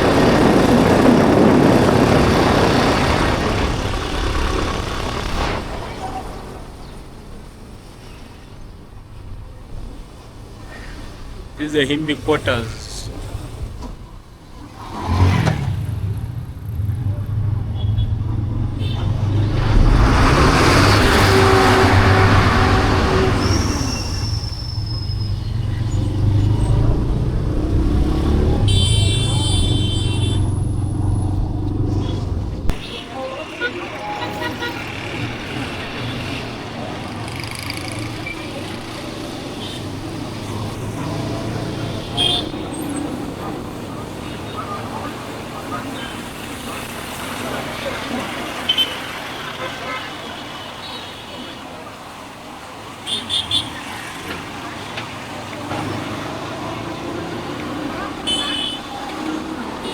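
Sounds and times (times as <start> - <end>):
motorbike engine droning: 0.0 - 6.7, 14.6 - 43.8
traffic noise: 0.0 - 59.9.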